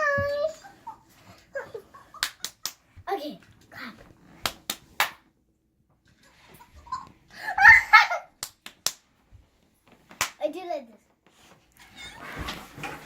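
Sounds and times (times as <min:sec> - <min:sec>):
hand claps: 0:02.1 - 0:02.9, 0:04.4 - 0:05.3, 0:08.4 - 0:09.1, 0:10.1 - 0:10.4.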